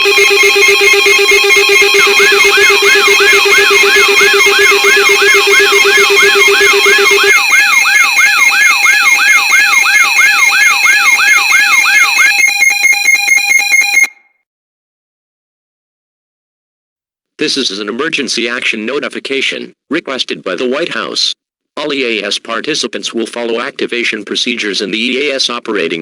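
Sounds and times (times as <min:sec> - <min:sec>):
steady electronic alarm tones: 0:00.0 - 0:14.3.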